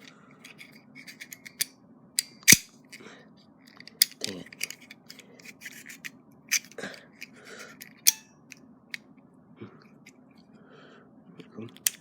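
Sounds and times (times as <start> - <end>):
knife metal clicks and scrapes: 0.0 - 2.7.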